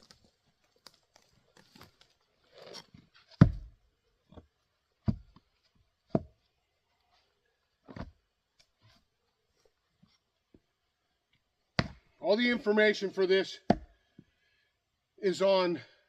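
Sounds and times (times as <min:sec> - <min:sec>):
axe splitting wood: 0:02.6 - 0:05.4, 0:11.8 - 0:12.1, 0:13.7 - 0:14.0.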